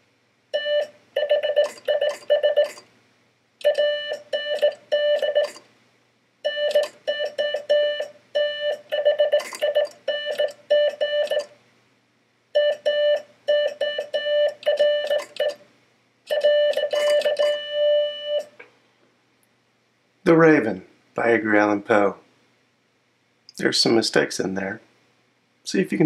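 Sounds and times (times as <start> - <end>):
buzzy morse code tone: 0.6 - 2.8, 3.6 - 5.6, 6.4 - 11.5, 12.6 - 15.6, 16.3 - 18.5.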